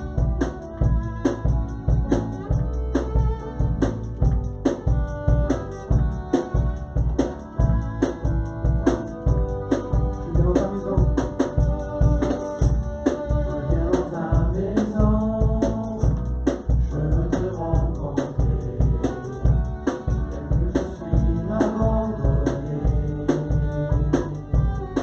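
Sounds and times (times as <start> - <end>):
drum beat: 0.0 - 25.0
heavy bass: 0.0 - 25.0
person singing: 5.6 - 25.0.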